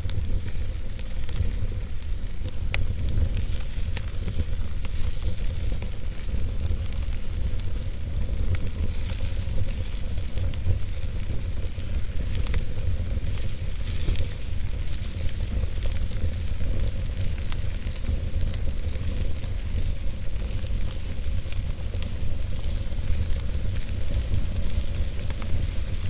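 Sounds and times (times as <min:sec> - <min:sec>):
fire crackling in fireplace: 0:00.0 - 0:26.0.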